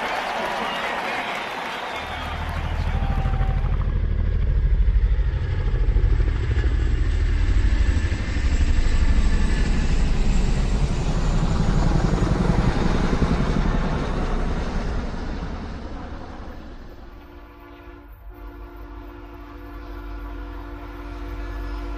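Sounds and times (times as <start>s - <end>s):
loud engine throbbing: 2.0s - 17.6s.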